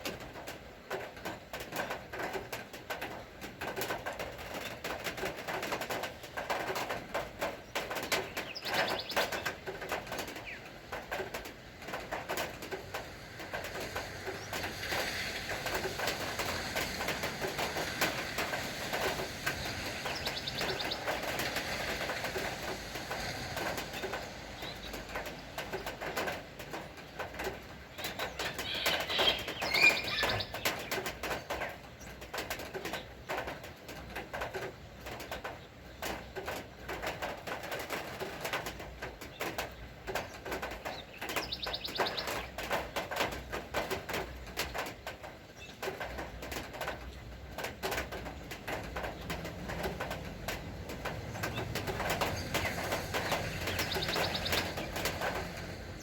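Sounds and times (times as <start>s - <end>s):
rain pattering: 0.0s - 56.0s
birds chirping: 7.6s - 10.8s, 17.6s - 22.5s, 23.6s - 27.2s, 27.9s - 33.4s, 39.3s - 42.7s, 51.1s - 56.0s.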